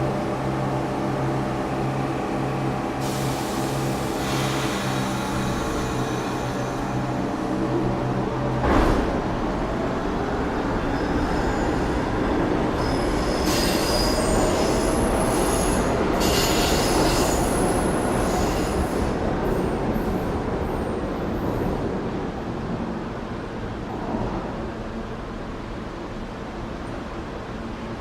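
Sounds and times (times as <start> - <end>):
subway train rumble: 0.0 - 28.0
wheels squealing on rails: 10.8 - 20.3.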